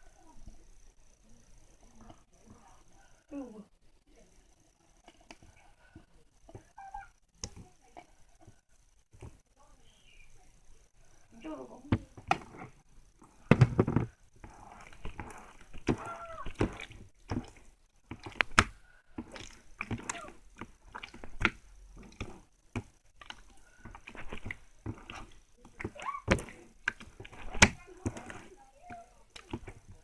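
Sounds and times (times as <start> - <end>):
slime squishing with wet pops: 11.9 - 30.0
slime squeaks: 14.5 - 17.5.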